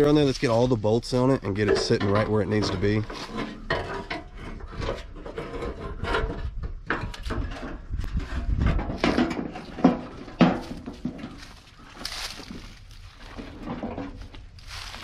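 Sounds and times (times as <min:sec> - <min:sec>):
sheet-metal fender clunking: 0:01.6 - 0:12.6.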